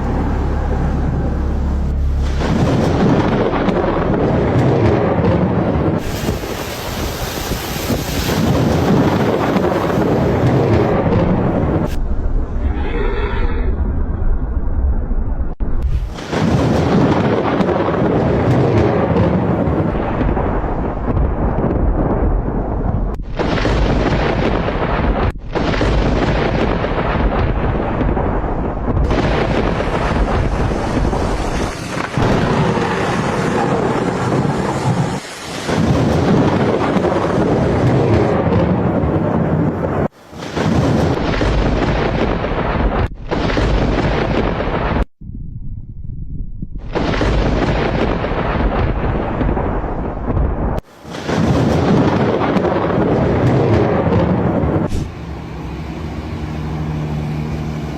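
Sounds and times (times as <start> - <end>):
heavy rain: 0.0 - 12.0, 15.9 - 21.1, 23.4 - 44.2, 50.8 - 57.9
strong wind: 0.0 - 57.9
thunder: 1.9 - 55.5.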